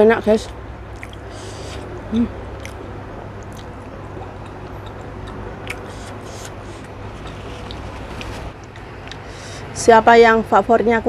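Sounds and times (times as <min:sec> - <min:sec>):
background hiss: 0:00.0 - 0:04.8, 0:05.4 - 0:08.6, 0:09.2 - 0:09.9
soft mouth clicks: 0:01.0 - 0:01.9, 0:02.6 - 0:02.8, 0:03.4 - 0:07.8, 0:08.6 - 0:09.5
person chewing food: 0:01.0 - 0:02.8, 0:03.4 - 0:09.6.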